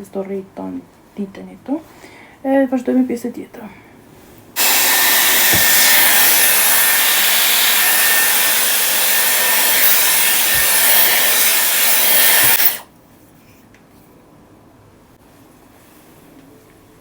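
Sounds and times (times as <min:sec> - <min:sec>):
hair styler blowing air: 0:04.6 - 0:12.8.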